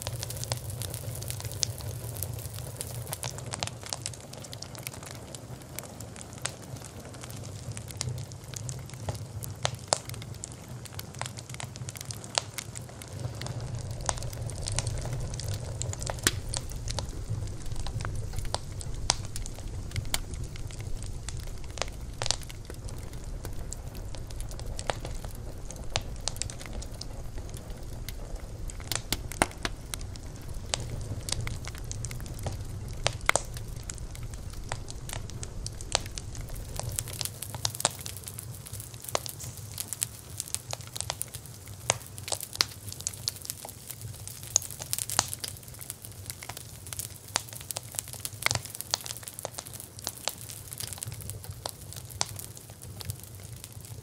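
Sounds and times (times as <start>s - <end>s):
wood fire crackling: 0.0s - 54.0s
low rumble: 12.9s - 39.9s.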